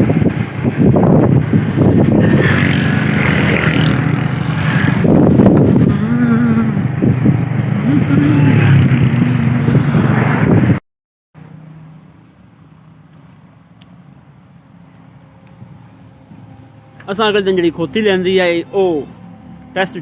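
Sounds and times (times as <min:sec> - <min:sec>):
vehicle running low noise: 0:11.4 - 0:20.0.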